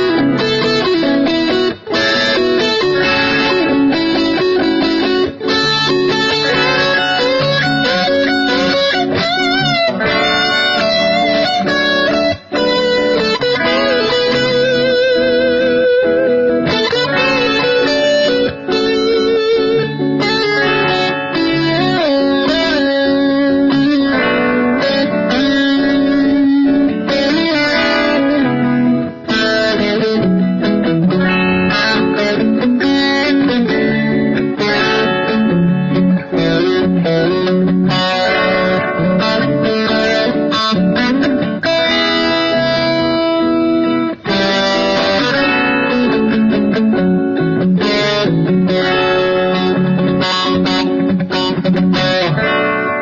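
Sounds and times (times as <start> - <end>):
electric guitar with delay: 0.0 - 53.0.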